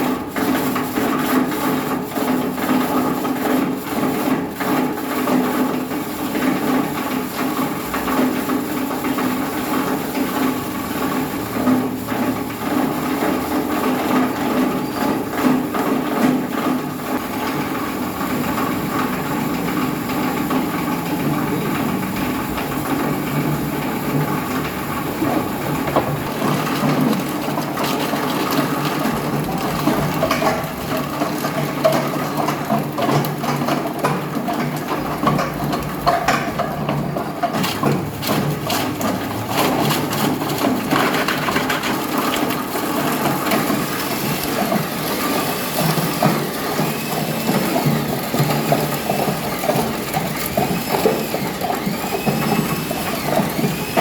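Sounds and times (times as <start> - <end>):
crusher motor hum: 43.7 - 54.0.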